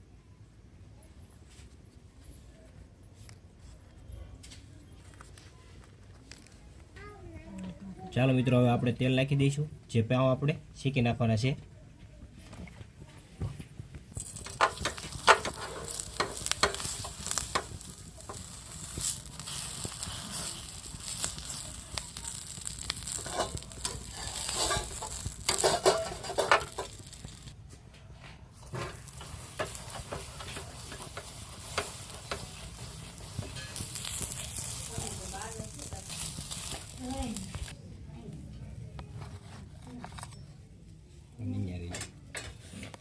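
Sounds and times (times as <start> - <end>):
buns sizzling in oil: 13.8 - 27.6, 28.5 - 37.8
spatula scraping and tapping: 14.1 - 21.7, 22.4 - 27.5, 28.6 - 37.6.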